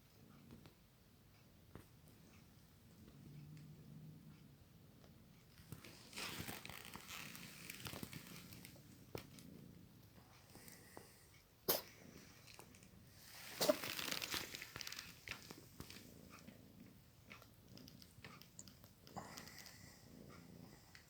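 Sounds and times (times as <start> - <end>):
kitten sneezing: 11.7 - 12.0, 13.5 - 13.9.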